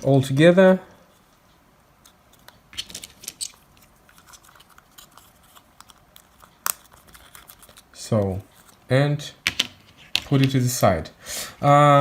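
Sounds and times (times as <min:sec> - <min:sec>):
plastic parts clicking and tapping: 0:09.4 - 0:10.6.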